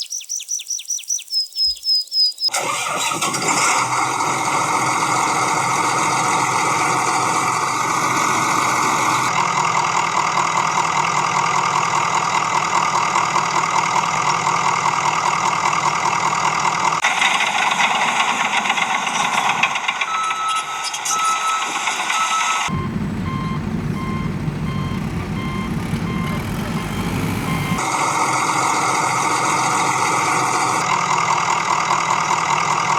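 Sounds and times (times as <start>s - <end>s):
heavy vehicle engine running: 2.6s - 32.9s
short beeps: 20.1s - 27.8s.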